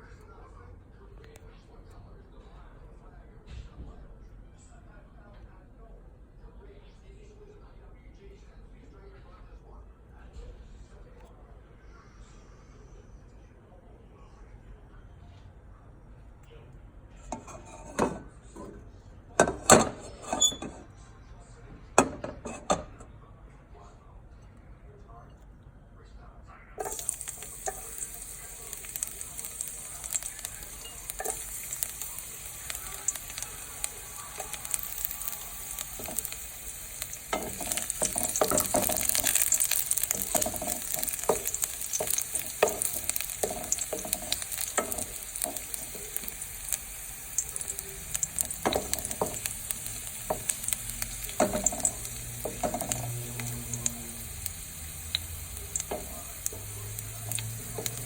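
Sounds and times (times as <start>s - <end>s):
utensil scraping a pan: 17.2s - 18.2s, 37.0s - 46.5s
vegetables sizzling in a pan: 26.8s - 58.0s.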